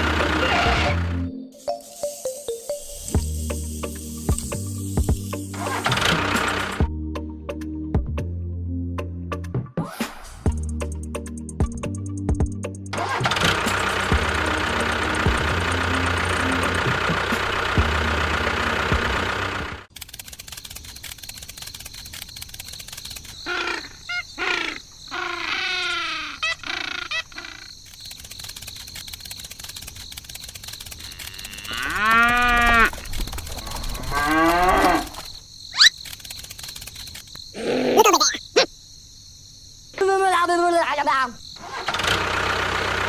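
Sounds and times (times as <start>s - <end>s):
engine running: 0.0s - 6.9s, 12.9s - 22.2s, 41.6s - 43.0s
cattle mooing: 31.1s - 32.9s, 33.7s - 35.2s.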